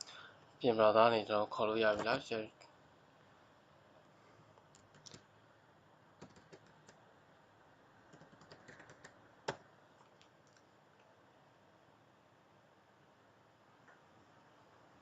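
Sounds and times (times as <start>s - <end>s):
faint keyboard typing: 4.6s - 5.3s, 6.2s - 7.0s, 8.1s - 11.1s.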